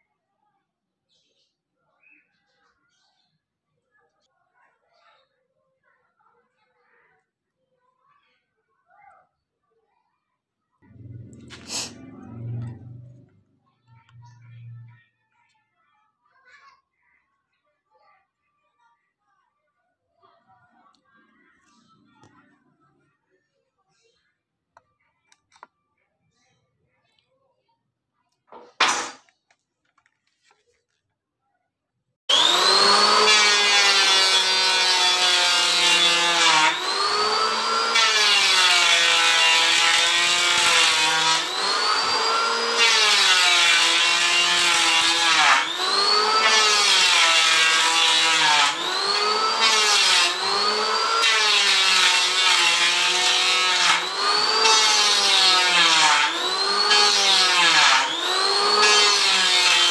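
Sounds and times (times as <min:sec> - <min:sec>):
electric wood planer cutting: 0:10.9 - 0:13.3, 0:32.3 - 0:59.9.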